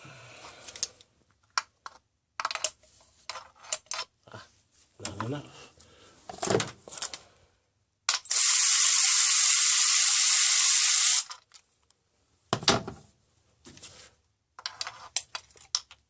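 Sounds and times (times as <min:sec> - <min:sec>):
ratchet wrench clicking: 0:08.1 - 0:11.3.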